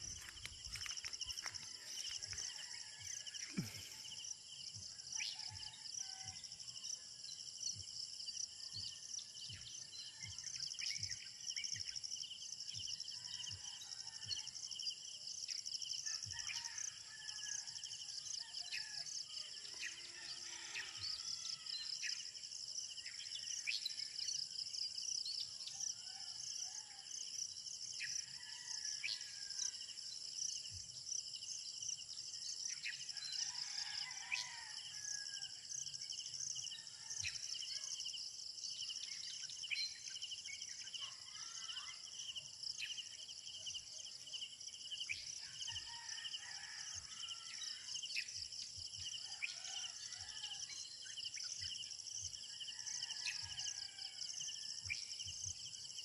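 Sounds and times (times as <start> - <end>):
insects chirring: 0.0 - 2.3.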